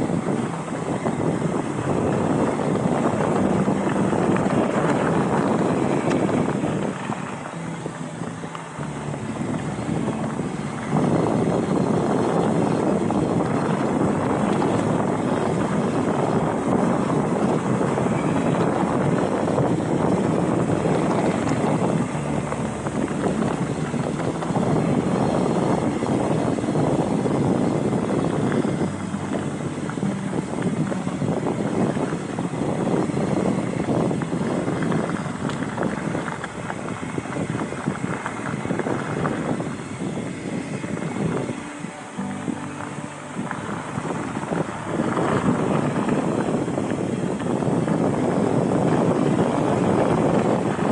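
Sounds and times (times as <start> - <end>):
bike tyres rumbling on dirt: 0.0 - 50.9
wind buffeting microphone: 0.0 - 50.9.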